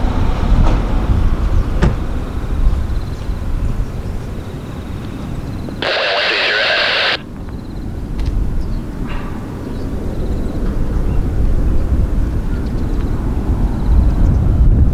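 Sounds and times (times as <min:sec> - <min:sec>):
radio static burst: 0:05.8 - 0:07.2.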